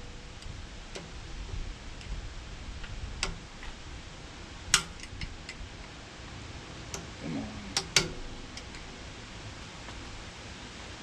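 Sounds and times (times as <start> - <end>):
faint low rumble: 0.0 - 11.0
hand tools clicking on metal: 4.7 - 5.6, 7.8 - 8.8.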